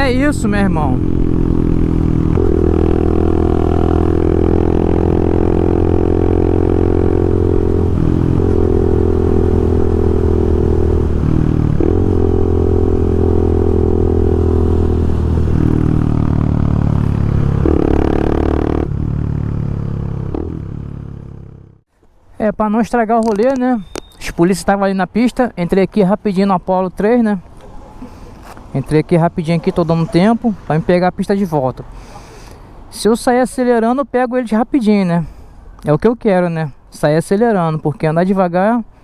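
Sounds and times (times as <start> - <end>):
motorcycle engine running: 0.0 - 21.8.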